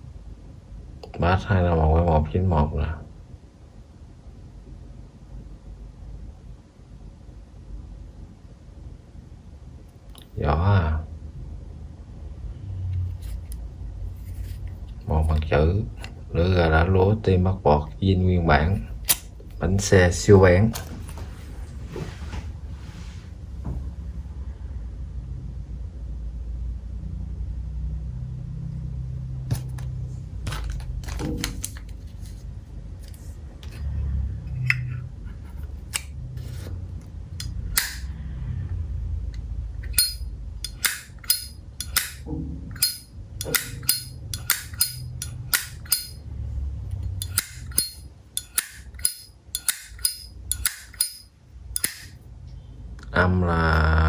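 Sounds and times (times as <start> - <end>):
steady low hum: 0.0 - 54.0
lighter lid clicking: 37.4 - 38.0, 39.9 - 42.2, 42.8 - 46.2, 47.2 - 51.2, 51.8 - 52.1.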